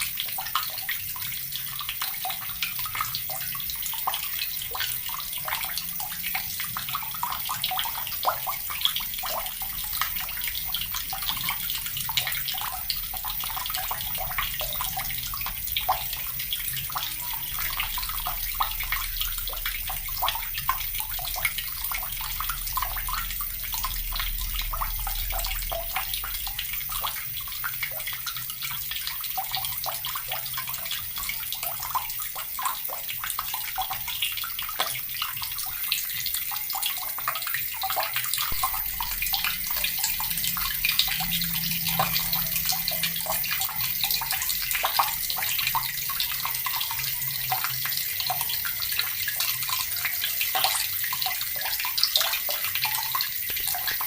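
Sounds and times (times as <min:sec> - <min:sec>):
water tap running: 0:00.0 - 0:54.0
faint low rumble: 0:17.8 - 0:27.2, 0:38.5 - 0:44.8.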